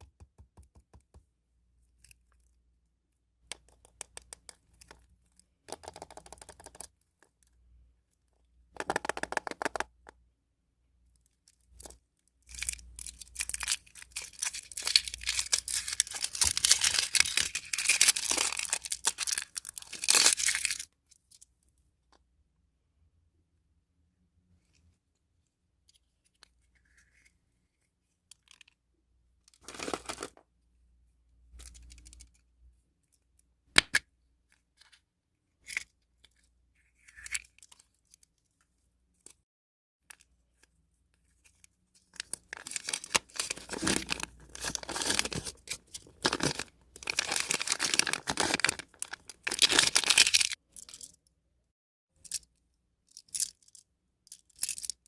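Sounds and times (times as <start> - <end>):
foil wrapper tearing and crinkling: 12.6 - 20.8, 29.6 - 30.3, 42.5 - 50.6.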